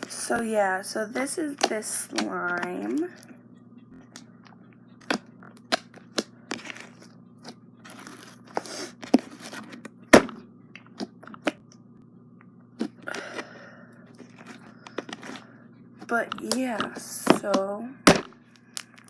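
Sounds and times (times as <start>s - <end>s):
slime squishing: 4.0s - 10.2s.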